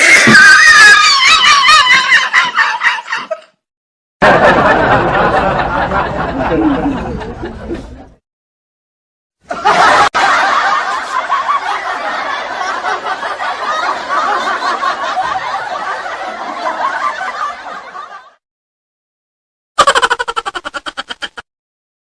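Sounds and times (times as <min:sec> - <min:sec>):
laughter: 0:00.5 - 0:03.6, 0:04.2 - 0:08.2, 0:09.5 - 0:18.4, 0:19.8 - 0:21.4.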